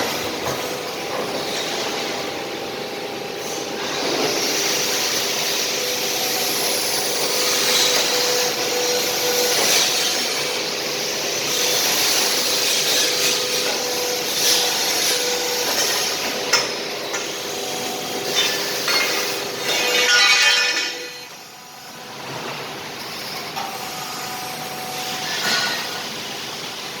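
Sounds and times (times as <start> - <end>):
tube bending machine rasping: 3.8 - 21.4.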